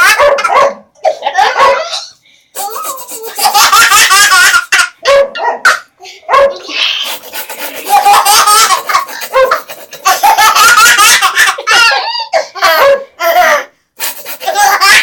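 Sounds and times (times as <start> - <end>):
baby laughing: 0.0 - 15.0.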